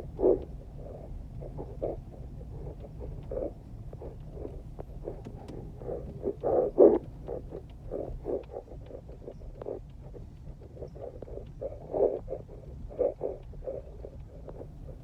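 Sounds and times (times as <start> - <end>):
low road rumble: 0.0 - 15.0
car suspension thuds and knocks: 5.1 - 6.2.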